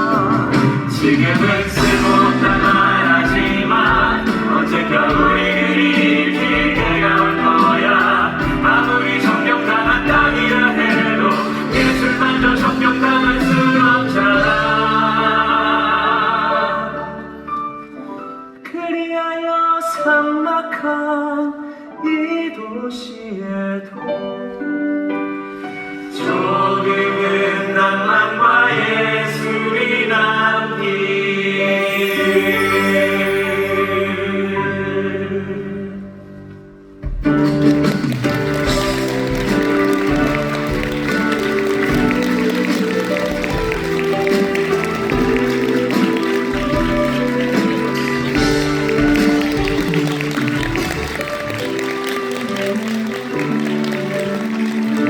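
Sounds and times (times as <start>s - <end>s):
several voices singing together: 0.0s - 17.2s, 26.2s - 35.9s, 38.4s - 51.9s
instrumental accompaniment: 0.0s - 18.6s, 30.8s - 55.0s
cast singing in harmony: 26.2s - 36.0s.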